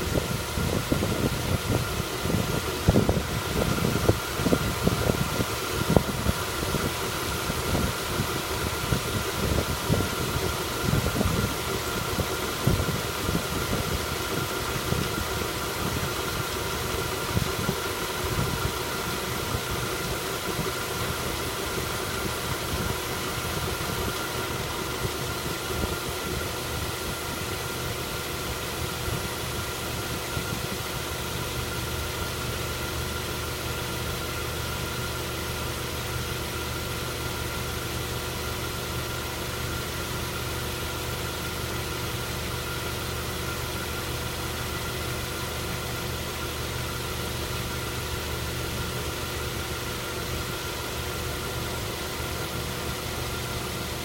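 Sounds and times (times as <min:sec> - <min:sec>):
car engine running: 0:00.0 - 0:54.0.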